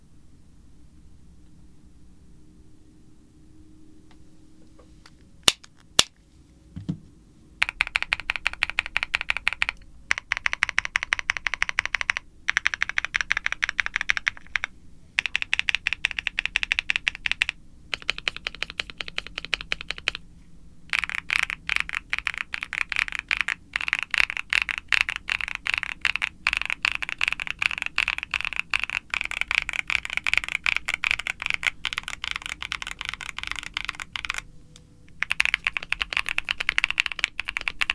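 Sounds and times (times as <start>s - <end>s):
low knock: 6.8s - 7.1s
fast typing on mechanical keyboard: 7.6s - 20.2s, 20.9s - 34.5s, 35.1s - 37.9s.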